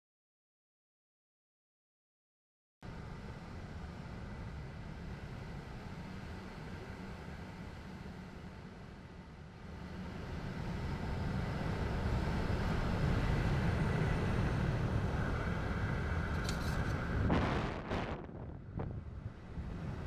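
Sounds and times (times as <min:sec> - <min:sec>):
wind rushing over camera: 0:12.2 - 0:20.0.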